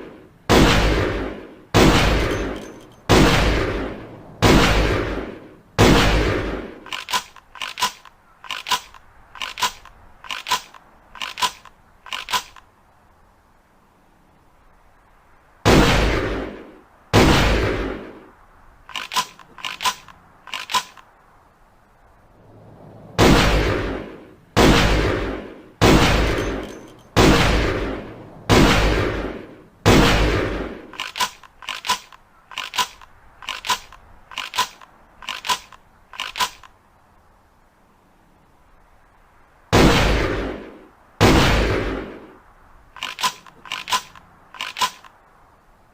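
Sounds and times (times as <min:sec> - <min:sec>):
loud gunshot: 0:00.5 - 0:06.8, 0:15.6 - 0:18.2, 0:23.2 - 0:26.6, 0:27.2 - 0:30.9, 0:39.7 - 0:42.3
shotgun action metallic clacks: 0:01.8 - 0:03.5, 0:05.9 - 0:12.7, 0:18.9 - 0:21.1, 0:25.8 - 0:27.5, 0:29.9 - 0:36.8, 0:43.0 - 0:45.2.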